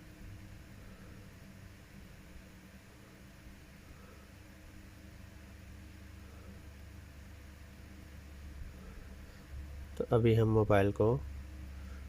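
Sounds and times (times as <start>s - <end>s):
low hum: 0.0s - 12.0s.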